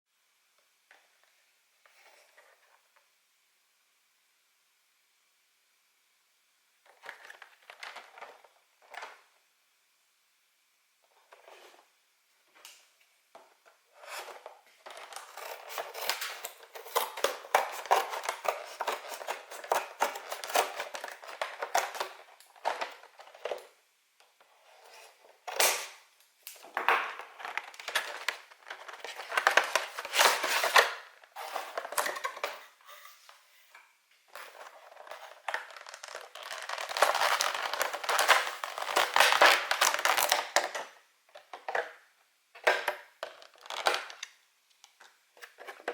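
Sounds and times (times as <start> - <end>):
plastic packaging crinkling: 6.9 - 9.2, 14.2 - 23.8, 24.9 - 33.3, 34.3 - 41.0, 43.2 - 44.4.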